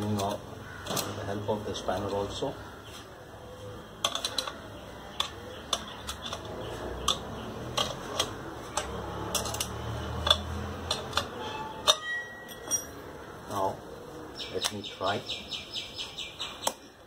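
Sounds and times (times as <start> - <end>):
spanner clinking on nuts: 5.2 - 13.0.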